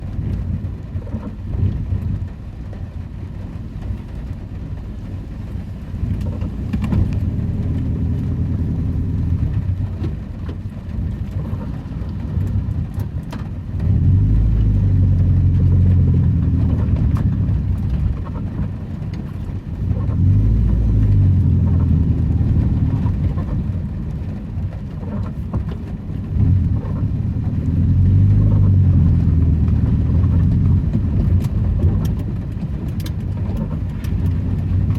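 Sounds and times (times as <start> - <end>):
car engine running: 0.0 - 34.9
road noise: 0.0 - 34.9.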